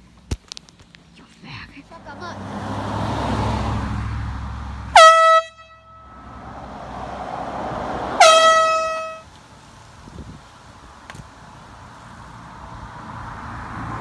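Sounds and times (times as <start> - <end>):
air horn blasts: 4.9 - 6.4, 8.1 - 9.3.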